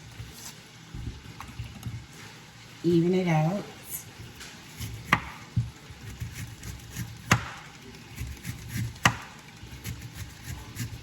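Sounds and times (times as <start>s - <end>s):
knocks on cutting board: 5.1s - 5.8s, 7.2s - 7.6s, 9.0s - 9.3s.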